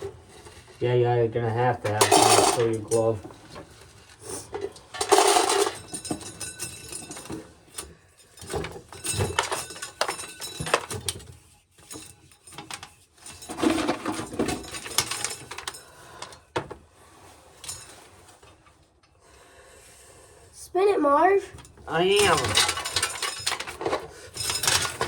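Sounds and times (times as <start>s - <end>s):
kernels and metal rattling: 0.0s - 18.8s, 21.5s - 25.0s
corn sheller clattering: 1.8s - 3.2s, 4.3s - 7.4s, 12.6s - 16.3s, 21.9s - 25.0s.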